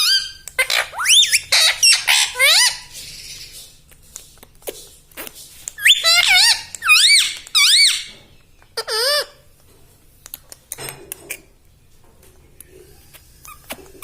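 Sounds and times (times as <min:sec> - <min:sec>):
parrot squeaky calls: 0:00.0 - 0:03.6, 0:05.8 - 0:08.2, 0:08.8 - 0:09.4.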